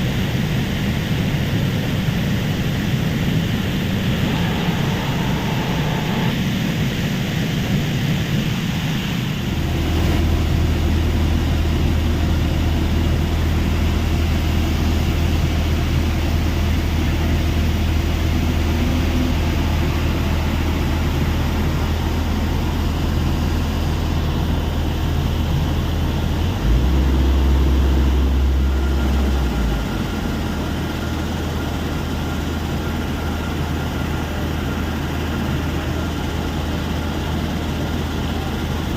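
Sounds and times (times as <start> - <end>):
heavy machinery droning: 0.0 - 38.9.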